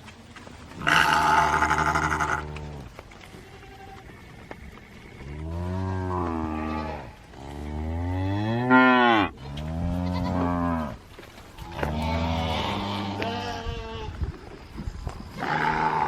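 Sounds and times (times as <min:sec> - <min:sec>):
cattle mooing: 0:00.8 - 0:02.8, 0:05.2 - 0:11.0.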